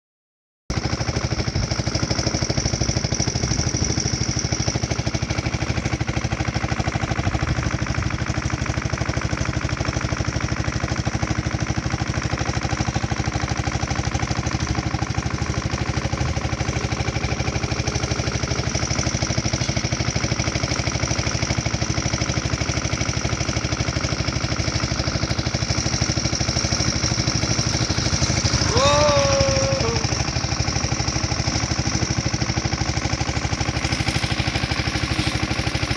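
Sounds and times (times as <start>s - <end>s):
boat motor chugging: 0.7s - 35.9s
person calling out: 28.6s - 30.2s.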